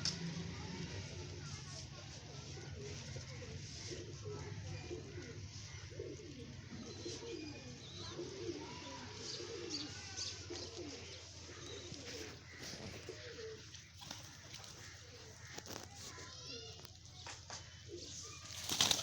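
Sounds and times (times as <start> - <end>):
pigeons cooing: 2.2 - 16.5.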